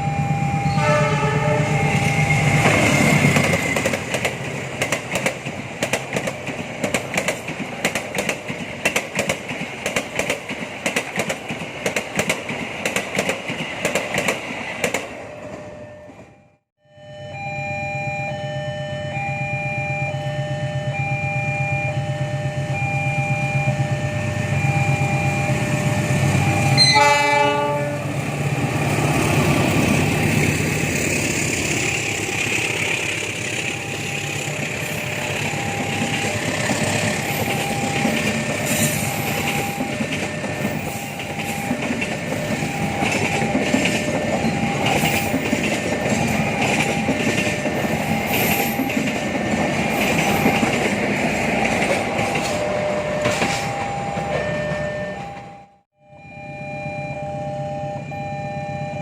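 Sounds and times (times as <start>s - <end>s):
train rumbling past: 0.0s - 16.4s, 22.1s - 55.7s
train horn blast: 0.6s - 2.5s, 26.6s - 28.3s
wheels clacking over rail joints: 2.5s - 15.2s, 28.6s - 55.5s.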